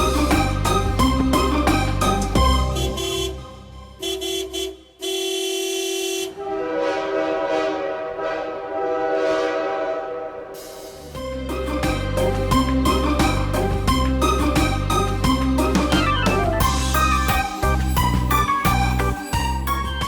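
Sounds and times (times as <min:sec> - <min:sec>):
background music with beat: 0:00.0 - 0:03.8, 0:10.7 - 0:20.0
held horn-like tones: 0:02.5 - 0:11.2.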